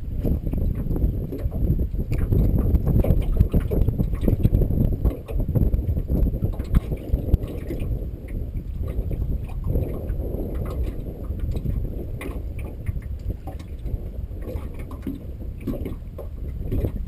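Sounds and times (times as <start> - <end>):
water slapping against boat hull: 0.0 - 17.0
wind rumble on microphone: 0.0 - 17.0.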